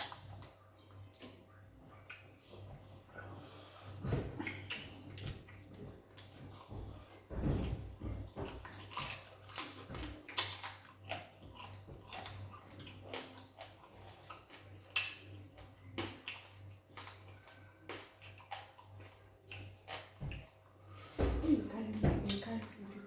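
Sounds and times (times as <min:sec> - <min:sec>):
wet chewing: 0:00.0 - 0:20.8
lip smacks and mouth clicks: 0:08.8 - 0:20.4.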